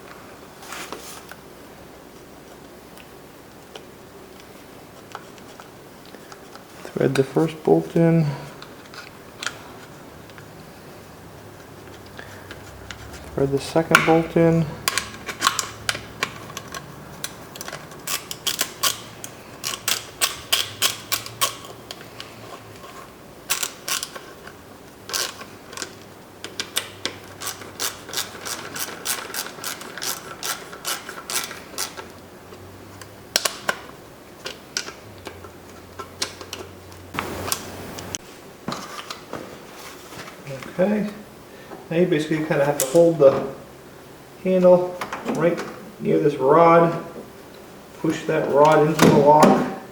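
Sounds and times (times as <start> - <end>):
hand ratchet clicking: 14.8 - 22.3, 23.5 - 24.3, 25.1 - 32.1.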